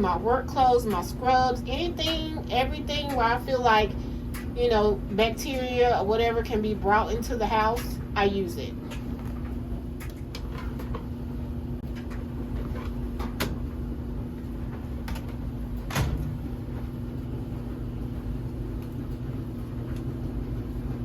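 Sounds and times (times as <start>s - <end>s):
steady low hum: 0.0s - 21.0s
clicks and knocks handling laundry: 11.8s - 16.9s.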